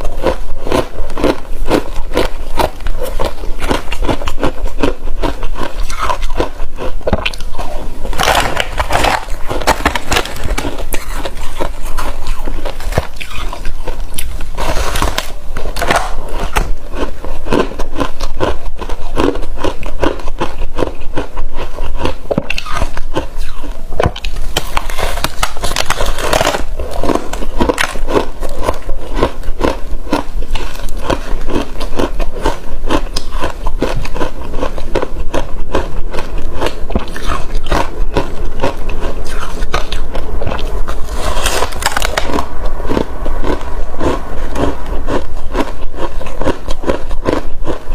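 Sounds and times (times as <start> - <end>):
crunching and chewing ice: 0.0 - 47.9.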